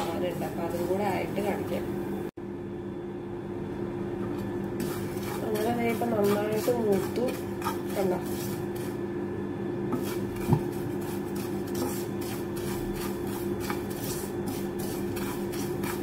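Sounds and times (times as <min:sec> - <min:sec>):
spatula scraping in a pan: 0:00.0 - 0:01.5, 0:04.8 - 0:09.0, 0:09.9 - 0:16.0.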